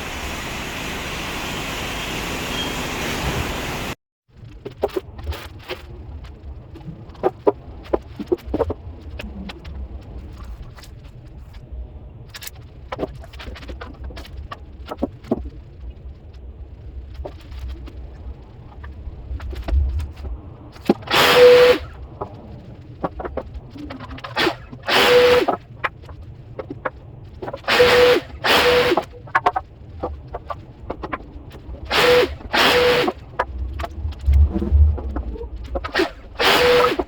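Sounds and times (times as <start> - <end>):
loud hissing burst: 0.0 - 4.0
low room rumble: 33.2 - 36.4.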